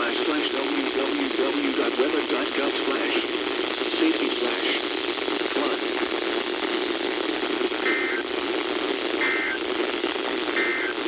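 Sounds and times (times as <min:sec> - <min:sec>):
radio hiss: 0:00.0 - 0:11.0
two-tone data chirps: 0:07.8 - 0:08.3, 0:09.2 - 0:09.6, 0:10.5 - 0:11.0.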